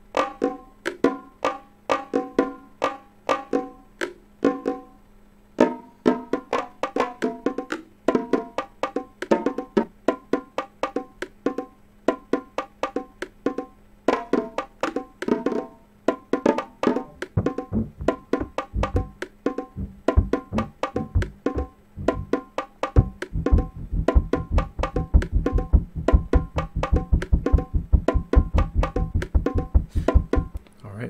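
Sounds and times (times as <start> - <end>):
electronic techno beat: 17.2 - 19.2, 19.8 - 22.4, 23.0 - 30.6.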